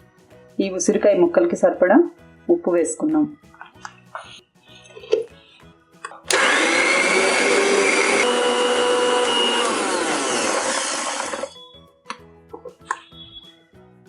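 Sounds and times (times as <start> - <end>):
mixer grinder motor grinding: 6.3 - 11.6.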